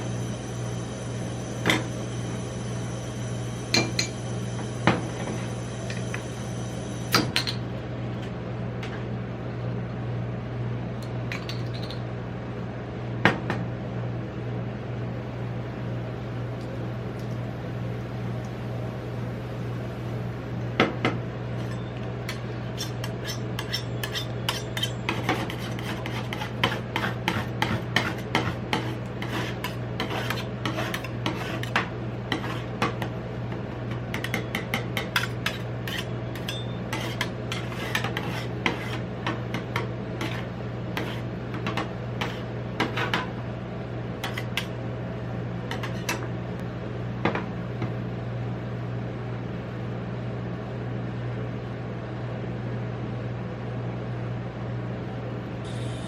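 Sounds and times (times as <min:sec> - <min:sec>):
metal spatulas tapping and scraping: 0:21.6 - 0:33.1, 0:34.1 - 0:43.3, 0:44.2 - 0:44.7.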